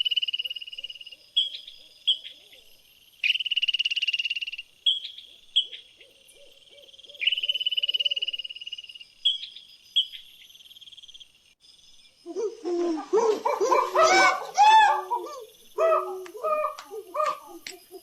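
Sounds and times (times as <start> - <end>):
high-pitched animal trilling call: 12.4 - 17.7.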